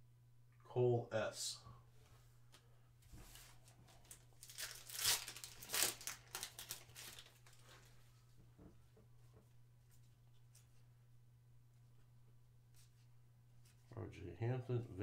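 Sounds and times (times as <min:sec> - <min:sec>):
low electrical hum: 0:00.0 - 0:15.0
wrapper torn open and crinkled: 0:04.0 - 0:07.6.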